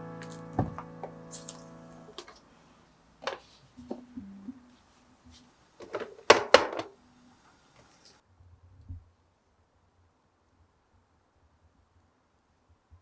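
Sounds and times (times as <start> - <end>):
household objects knocking: 0.6 - 0.9.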